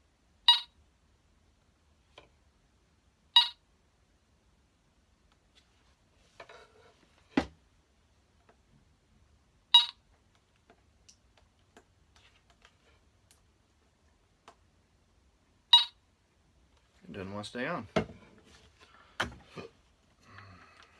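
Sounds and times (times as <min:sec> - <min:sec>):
short electronic beeps: 0:00.5 - 0:00.8, 0:03.4 - 0:03.6, 0:09.8 - 0:10.0, 0:15.7 - 0:16.0.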